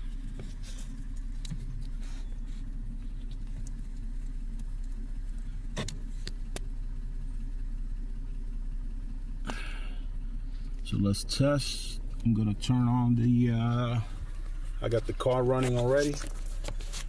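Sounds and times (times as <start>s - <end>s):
car engine idling: 0.0s - 17.0s.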